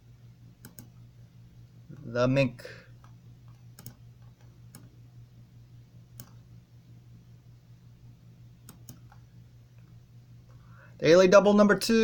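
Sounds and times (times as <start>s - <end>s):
low electrical hum: 0.0s - 12.0s
computer control clicks: 0.6s - 0.9s, 3.0s - 4.9s, 6.1s - 6.4s, 8.6s - 9.2s.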